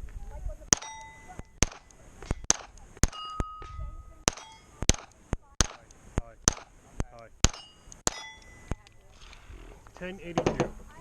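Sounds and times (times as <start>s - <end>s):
steel targets clanging: 0.7s - 5.8s, 7.4s - 8.9s
pistol shots: 0.7s - 6.7s, 7.4s - 8.8s.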